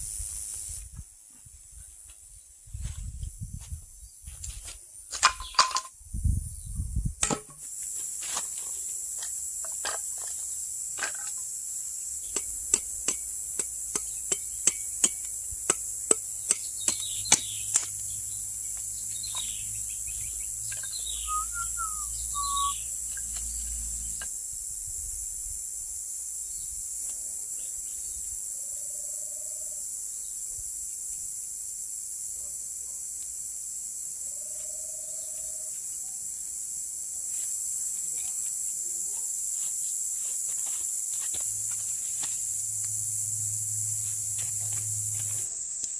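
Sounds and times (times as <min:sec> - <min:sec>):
insects chirring: 0:00.0 - 0:45.9
bird chirps: 0:16.4 - 0:24.3.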